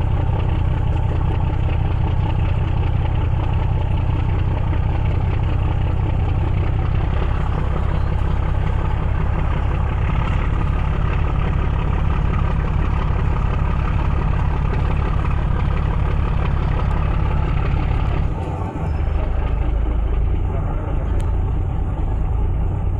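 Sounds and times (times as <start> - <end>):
boat engine droning: 0.0 - 22.9.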